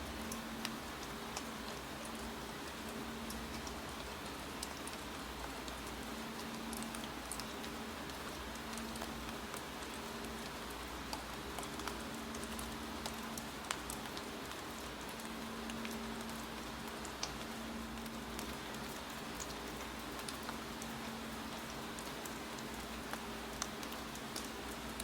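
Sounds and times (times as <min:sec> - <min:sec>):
steady rain: 0:00.0 - 0:25.0
sharp drips or clicks: 0:00.1 - 0:25.0.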